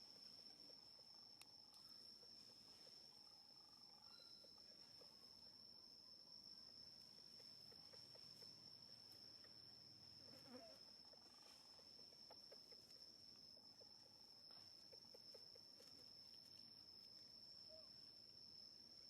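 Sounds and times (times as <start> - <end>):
faint high-pitched whine: 0.0 - 19.0
faint short chirps and squeaks: 4.0 - 4.6.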